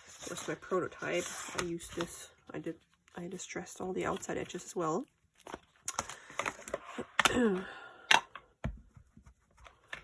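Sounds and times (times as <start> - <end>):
paper rustling and crinkling: 0.0 - 7.0.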